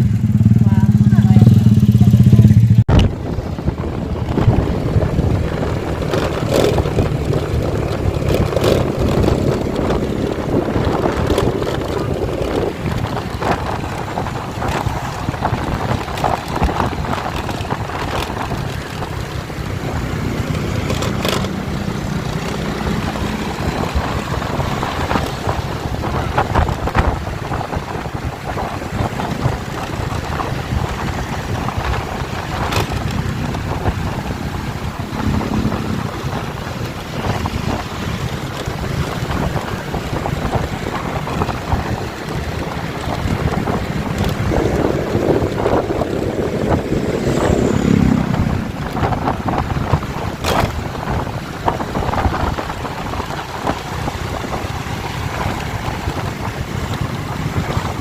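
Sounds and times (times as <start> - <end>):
steady low rumble: 0.0 - 20.8, 23.3 - 50.4
wind buffeting microphone: 0.0 - 58.0.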